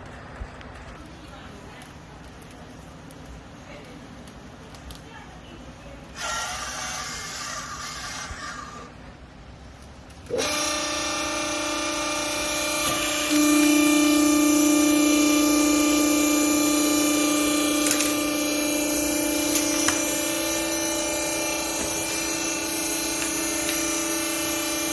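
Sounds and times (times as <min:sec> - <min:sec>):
hydraulic motor and pump whine: 0:06.1 - 0:09.0, 0:10.2 - 0:24.9.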